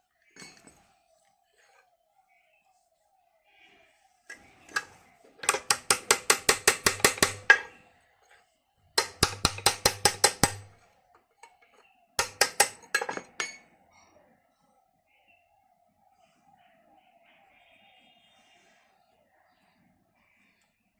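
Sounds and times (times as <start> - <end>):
ratchet wrench clicking: 4.7 - 7.7.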